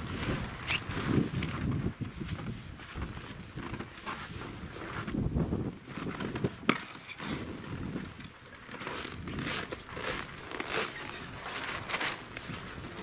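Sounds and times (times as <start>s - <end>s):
wind buffeting microphone: 0.0s - 8.3s
footsteps crunching in snow: 0.0s - 13.0s.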